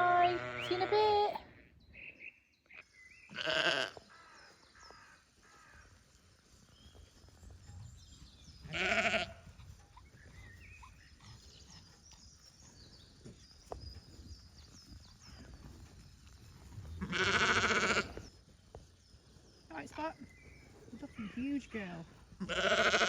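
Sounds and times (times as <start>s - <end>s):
sheep bleating: 0.0s - 1.4s, 3.3s - 4.0s, 8.7s - 9.4s, 17.0s - 18.2s, 22.4s - 23.0s.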